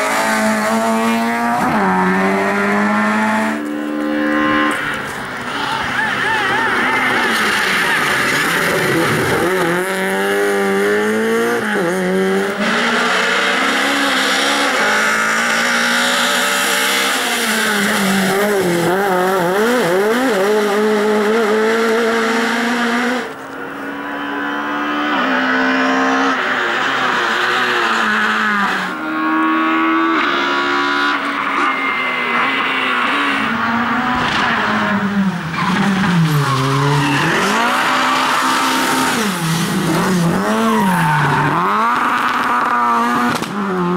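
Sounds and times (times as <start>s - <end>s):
rally car engines revving: 0.0s - 43.9s
tyre squeal: 35.5s - 42.8s.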